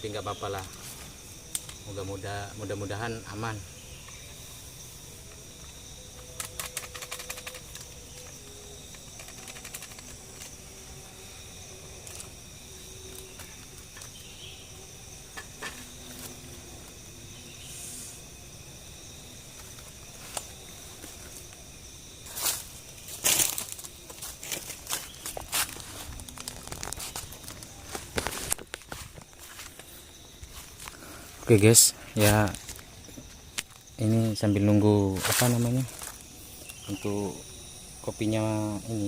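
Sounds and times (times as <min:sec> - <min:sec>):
insects droning: 0:00.0 - 0:39.0
dry crackles and clicks: 0:01.5 - 0:01.8, 0:06.1 - 0:10.6, 0:23.2 - 0:29.9, 0:33.5 - 0:33.9.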